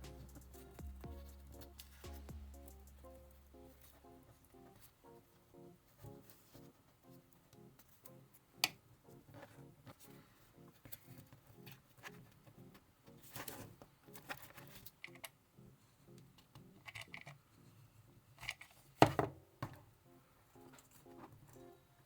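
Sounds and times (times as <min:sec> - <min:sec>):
plucked-string background music: 0:00.0 - 0:06.7.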